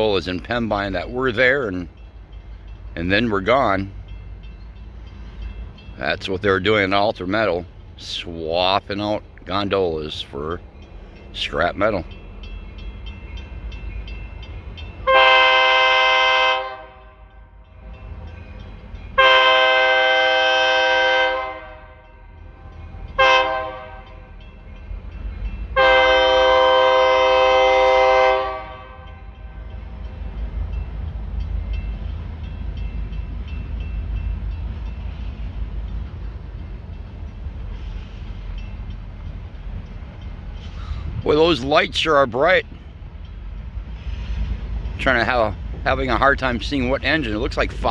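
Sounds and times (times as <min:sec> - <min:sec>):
diesel locomotive rumble: 0:00.0 - 0:47.9
locomotive air horn blasts: 0:15.0 - 0:17.6, 0:19.2 - 0:24.3, 0:25.7 - 0:29.8.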